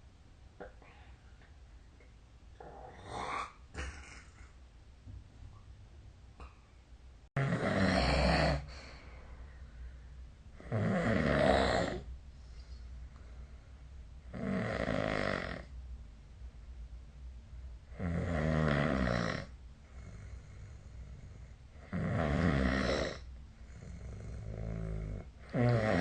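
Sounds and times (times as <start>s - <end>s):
person snoring: 2.6s - 3.6s, 7.4s - 9.0s, 10.6s - 12.1s, 14.3s - 15.7s, 18.0s - 26.0s.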